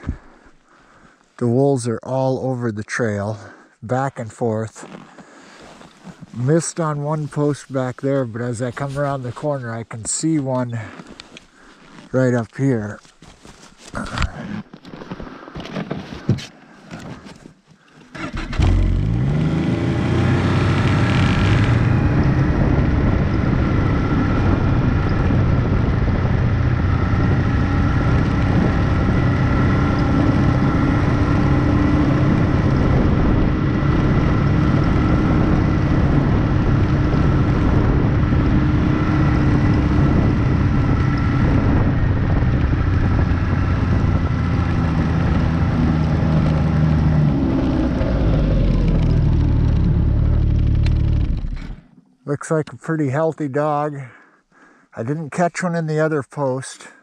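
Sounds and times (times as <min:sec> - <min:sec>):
snowmobile engine revving: 0:18.1 - 0:51.8.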